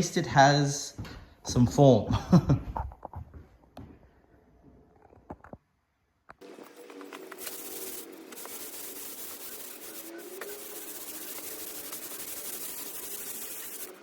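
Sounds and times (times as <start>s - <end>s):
timber rubbing against timber: 7.4s - 14.0s.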